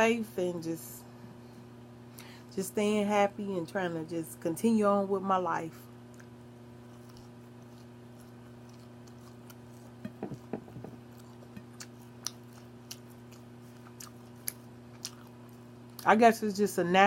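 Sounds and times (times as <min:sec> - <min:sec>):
steady low hum: 0:00.0 - 0:17.0
quiet chewing: 0:06.1 - 0:16.1.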